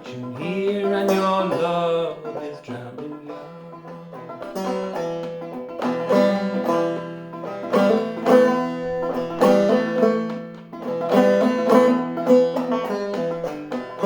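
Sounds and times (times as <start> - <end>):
banjo played clawhammer style: 0.0 - 14.0.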